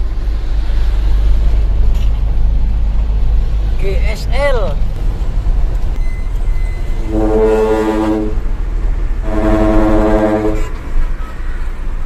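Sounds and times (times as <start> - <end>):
truck engine running: 0.0 - 12.0
trumpet air horn blasts: 7.0 - 8.4, 9.2 - 11.4.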